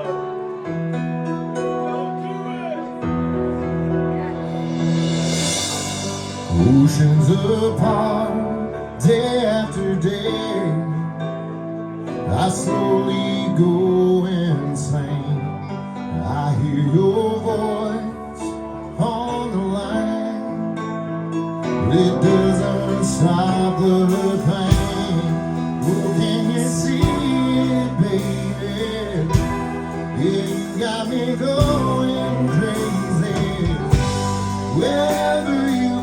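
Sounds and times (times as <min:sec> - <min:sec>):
guitar: 0:00.0 - 0:36.0
sharp drum hits: 0:04.6 - 0:07.2, 0:29.3 - 0:30.6
man singing: 0:06.4 - 0:36.0.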